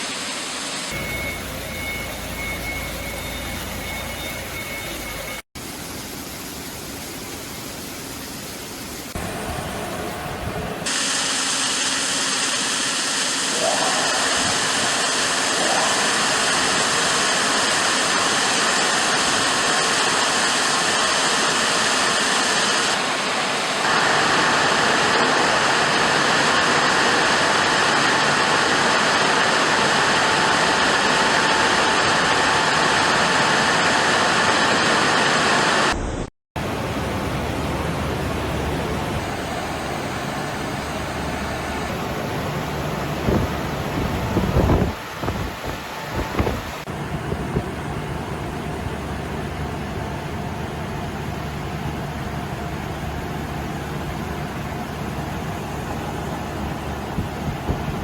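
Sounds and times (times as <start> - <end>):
car wash machinery running: 0.0 - 5.8, 9.0 - 58.0
water spray rushing: 5.6 - 35.9.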